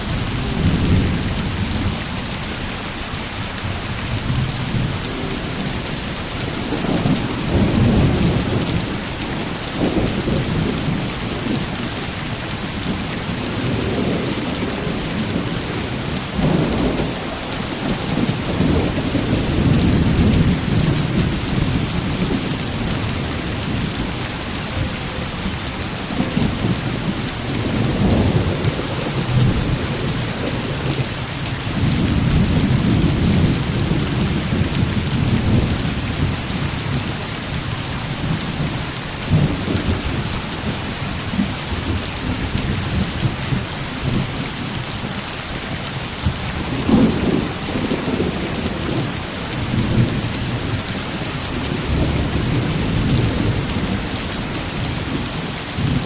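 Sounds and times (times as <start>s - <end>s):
heavy rain hissing: 0.0s - 56.0s
thunder rumbling: 4.1s - 11.8s, 12.6s - 37.1s, 46.2s - 56.0s.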